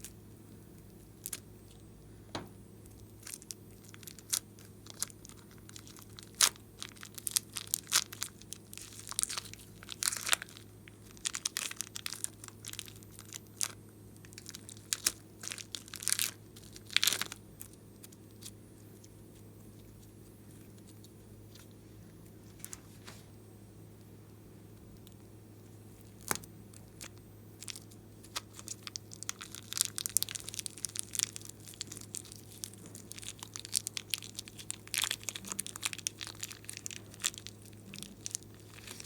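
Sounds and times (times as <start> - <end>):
slime crackling and popping: 0.8 - 1.8, 2.4 - 22.8, 26.0 - 39.0.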